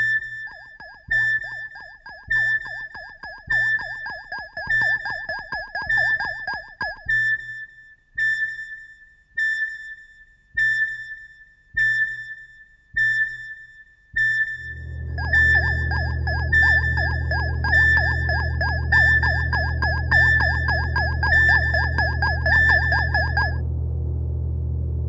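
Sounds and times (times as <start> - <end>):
high electronic beep pulsing: 0.0 - 7.7, 14.2 - 23.6
fast warbling tone: 0.4 - 7.1, 14.7 - 23.6.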